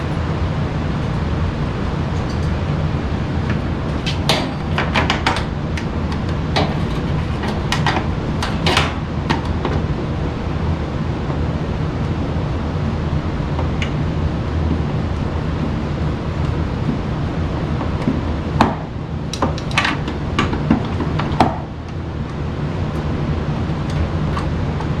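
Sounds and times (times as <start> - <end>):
steady low hum: 0.0 - 25.0
tools and sheet metal clicking: 3.5 - 9.6, 19.3 - 21.5.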